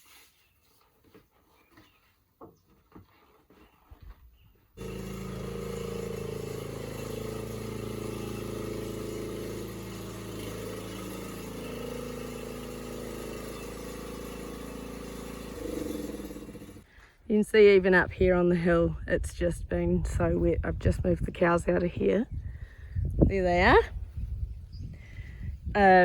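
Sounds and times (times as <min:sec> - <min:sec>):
vehicle engine running: 0:04.8 - 0:16.8.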